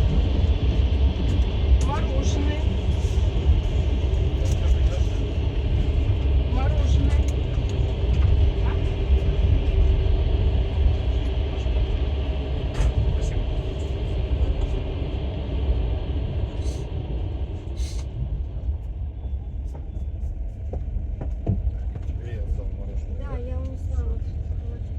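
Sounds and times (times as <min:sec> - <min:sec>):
train wheels rumbling on track: 0:00.0 - 0:24.9.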